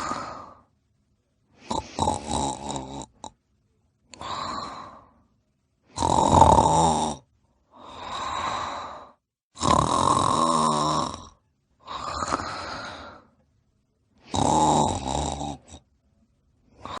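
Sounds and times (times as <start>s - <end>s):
loud rattling snores: 0.0s - 0.5s, 1.7s - 3.3s, 5.9s - 7.3s, 9.6s - 13.1s, 14.3s - 15.8s
quiet breathy breaths: 0.0s - 6.0s, 7.2s - 9.3s, 11.2s - 17.0s.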